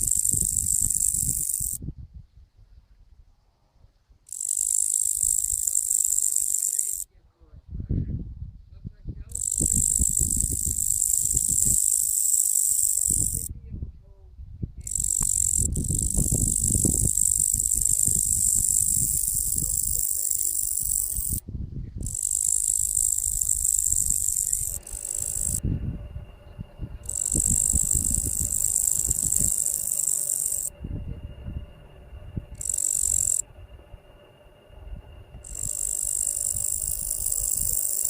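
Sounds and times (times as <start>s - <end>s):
high-pitched insect buzz: 0.0s - 1.8s, 4.3s - 7.1s, 9.3s - 13.5s, 14.8s - 38.0s
faint steady hum: 0.0s - 38.0s
low microphone rumble: 7.1s - 11.9s, 13.0s - 38.0s.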